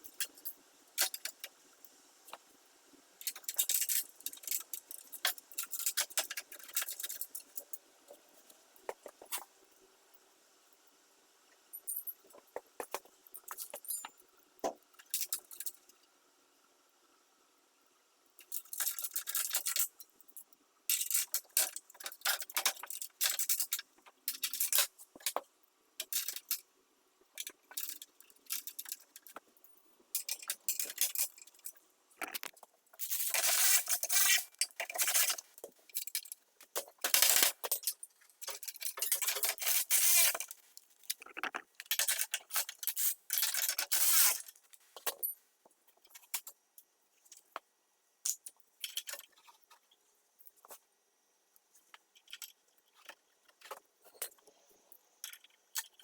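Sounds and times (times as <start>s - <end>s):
metal tools clinking and scraping: 30.2s - 40.5s.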